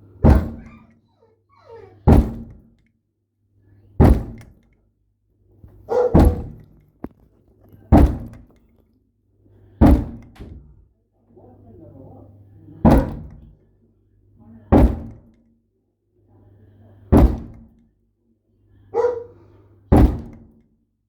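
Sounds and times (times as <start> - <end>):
heavy ringing thuds: 5.9 - 7.1.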